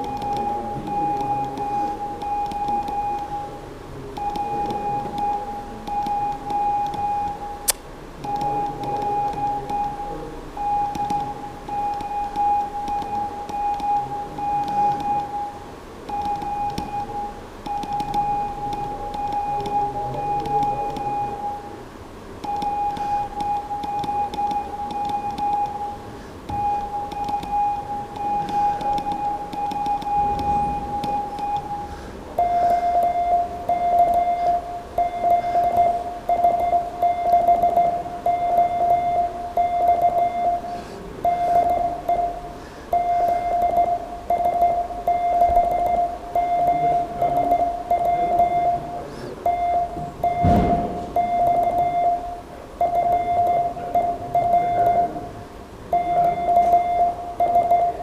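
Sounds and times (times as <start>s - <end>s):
morse code beeps: 0.0s - 21.8s, 22.4s - 58.0s
faint higher morse beep: 26.6s - 55.3s, 55.9s - 58.0s
dull thump: 50.4s - 51.0s.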